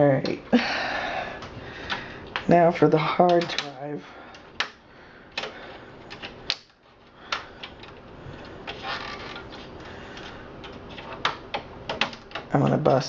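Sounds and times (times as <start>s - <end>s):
plastic and metal parts clicking: 3.2s - 4.8s, 8.6s - 12.5s.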